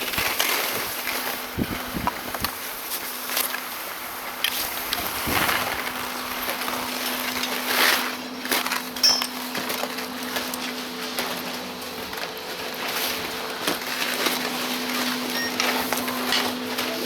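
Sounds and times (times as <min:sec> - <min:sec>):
skis swishing over snow: 0:00.0 - 0:17.0
wind buffeting microphone: 0:01.4 - 0:02.6.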